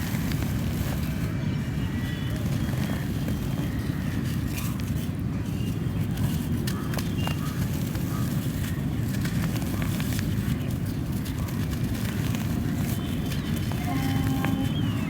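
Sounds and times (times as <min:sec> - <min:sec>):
dirt crumbled by hand: 0:06.1 - 0:15.0.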